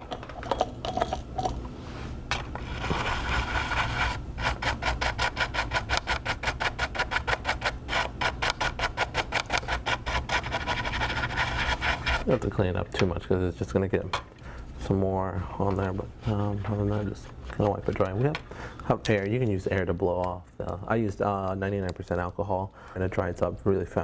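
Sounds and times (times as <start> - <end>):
scrubbing on a circuit board: 2.6 - 12.3.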